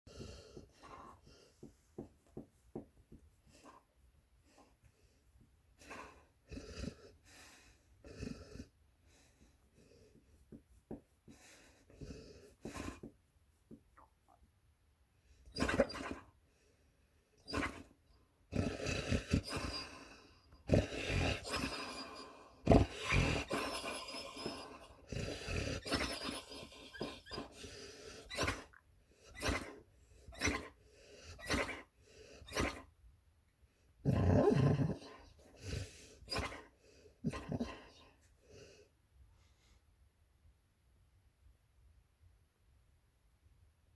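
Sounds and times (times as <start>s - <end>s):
puppy snoring: 5.9s - 7.2s, 8.0s - 8.8s, 17.5s - 32.9s, 34.0s - 38.9s.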